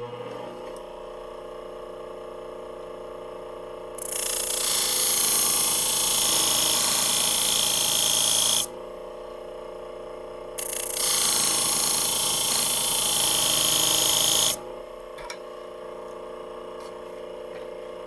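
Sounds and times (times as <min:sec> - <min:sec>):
sharpening wheel humming: 0:04.0 - 0:08.7, 0:10.6 - 0:14.6.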